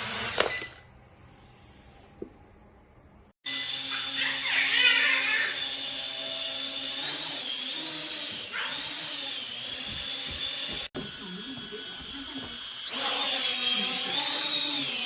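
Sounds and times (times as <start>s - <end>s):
toy drone motors whining: 3.5s - 15.0s.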